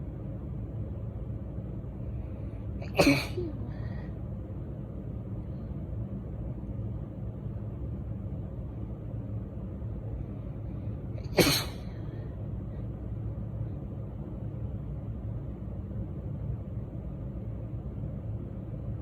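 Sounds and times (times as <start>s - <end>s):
low background rumble: 0.0s - 19.0s
woman sneezing: 2.8s - 3.9s, 11.2s - 11.9s.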